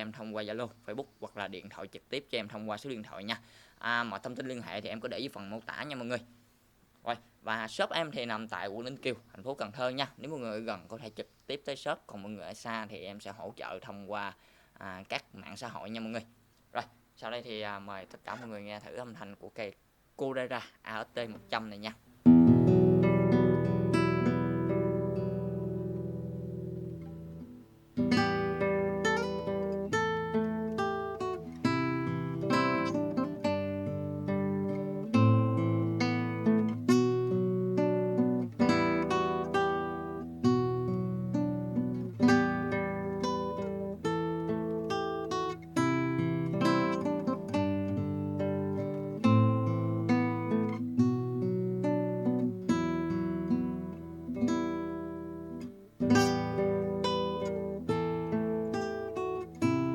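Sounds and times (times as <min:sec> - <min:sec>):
classical guitar fingerpicked: 0:22.2 - 0:59.9.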